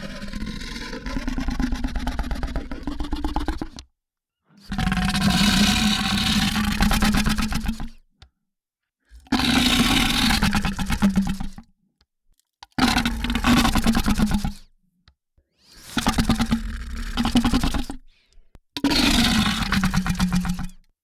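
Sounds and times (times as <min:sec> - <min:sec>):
monster growls: 0:00.0 - 0:03.8.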